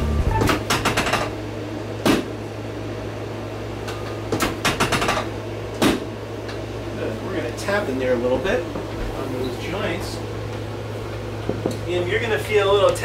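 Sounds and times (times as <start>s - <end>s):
low hum: 0.0s - 0.7s.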